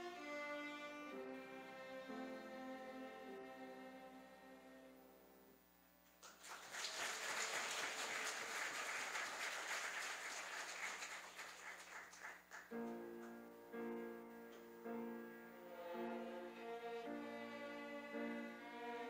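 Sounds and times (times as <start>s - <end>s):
piano music: 12.7s - 19.0s.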